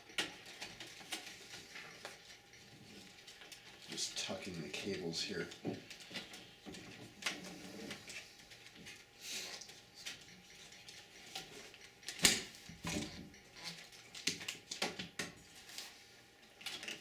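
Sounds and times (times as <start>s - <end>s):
clicks and rustles of cables: 5.5s - 9.0s, 11.3s - 17.0s.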